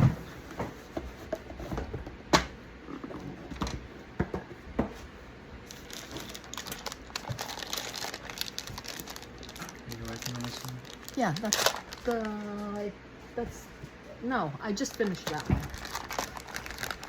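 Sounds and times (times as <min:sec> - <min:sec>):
packaging crinkling: 0:05.6 - 0:12.6, 0:14.9 - 0:17.0.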